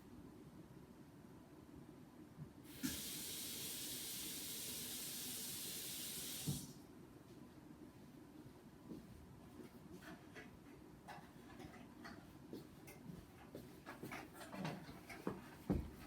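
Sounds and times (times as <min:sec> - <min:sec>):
water running from a tap: 0:02.7 - 0:06.8.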